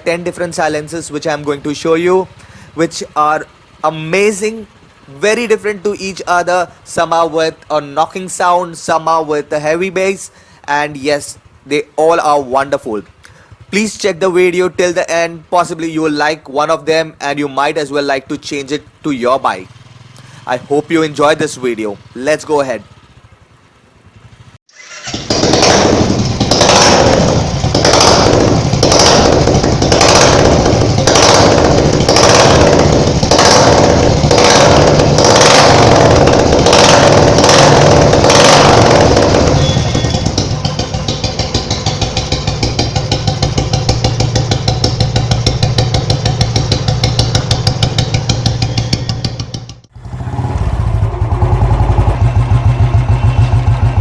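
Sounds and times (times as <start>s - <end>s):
motorcycle engine idling: 0.0s - 54.0s
sharp regular beat: 25.3s - 49.9s.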